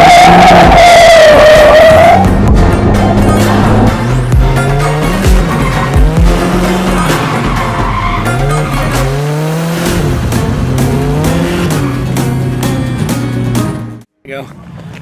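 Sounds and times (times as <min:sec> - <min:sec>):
tires squealing: 0:00.0 - 0:10.2
car engine revving: 0:00.0 - 0:13.5.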